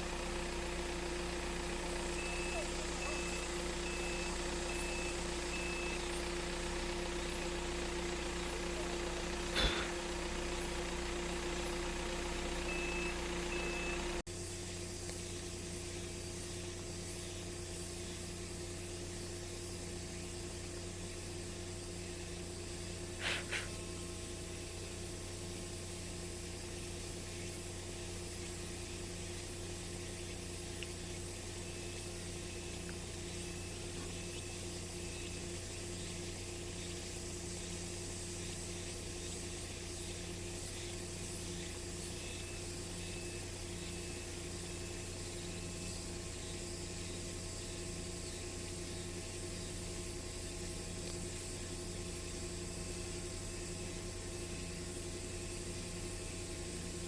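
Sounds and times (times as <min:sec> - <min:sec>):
rapid electronic beeping: 0:00.0 - 0:14.2
vehicle engine running: 0:00.0 - 0:57.0.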